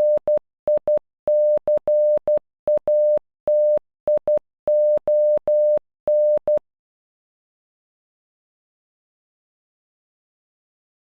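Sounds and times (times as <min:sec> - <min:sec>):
morse code beeps: 0:00.0 - 0:06.6.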